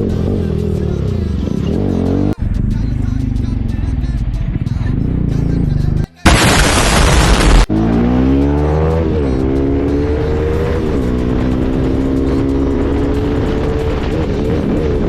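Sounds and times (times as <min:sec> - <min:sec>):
motorcycle engine accelerating: 0:07.1 - 0:15.0.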